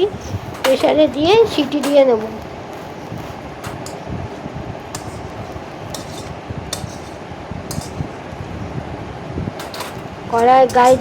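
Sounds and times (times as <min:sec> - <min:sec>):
steady background hiss: 0:00.0 - 0:11.0
metal spatula scraping a pan: 0:04.9 - 0:08.1, 0:09.6 - 0:11.0.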